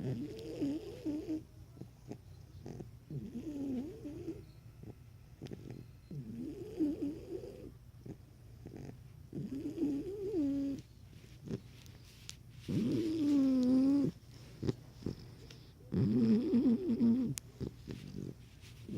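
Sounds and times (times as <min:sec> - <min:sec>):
puppy snoring with whistling tone: 0:00.0 - 0:01.4, 0:02.1 - 0:07.7, 0:08.6 - 0:10.8, 0:12.7 - 0:14.2, 0:15.8 - 0:17.4.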